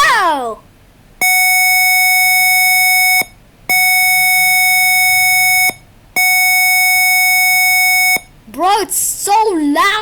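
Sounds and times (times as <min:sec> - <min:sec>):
buzzy smoke alarm beep: 0:01.2 - 0:08.3.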